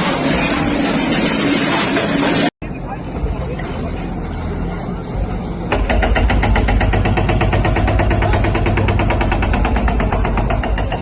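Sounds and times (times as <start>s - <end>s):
heavy machinery rapid knocking: 0.0s - 2.5s, 5.7s - 11.0s
deep machinery rumble: 0.0s - 11.0s.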